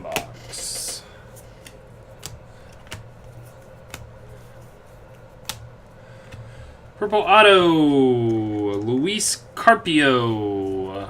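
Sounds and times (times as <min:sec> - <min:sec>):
trading cards flipped and clicking: 0:00.1 - 0:06.5.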